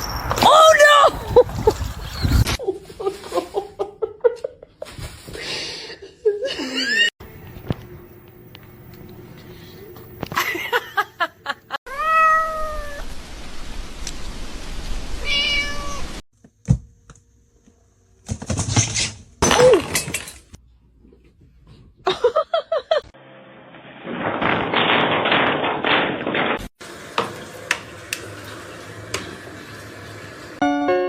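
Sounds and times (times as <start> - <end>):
cats meowing: 11.9 - 13.0, 15.2 - 16.1.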